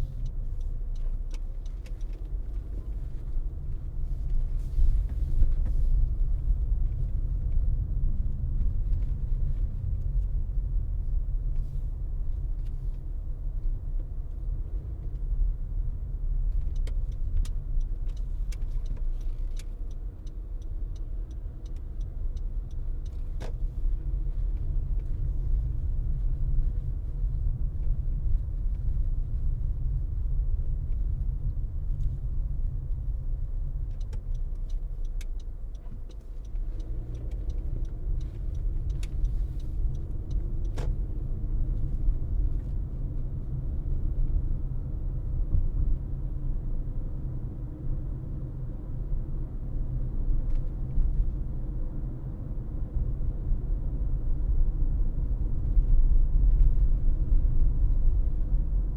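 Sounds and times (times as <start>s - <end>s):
car road and engine rumble: 0.0s - 58.9s
light evenly spaced ticks: 16.6s - 23.9s, 33.8s - 42.0s.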